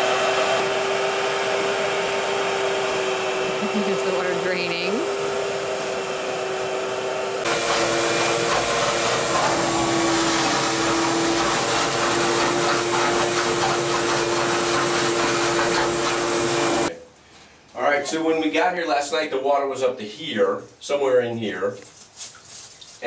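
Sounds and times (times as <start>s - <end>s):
shop vac sucking water: 0.0s - 16.9s.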